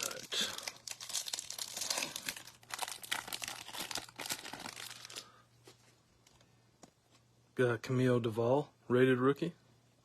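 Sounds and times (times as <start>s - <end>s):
wrapper tearing and crinkling: 0.0s - 5.4s.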